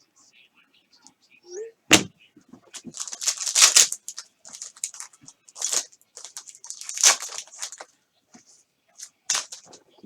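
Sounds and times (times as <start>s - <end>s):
card packaging crinkling: 2.7s - 7.9s, 9.0s - 9.8s.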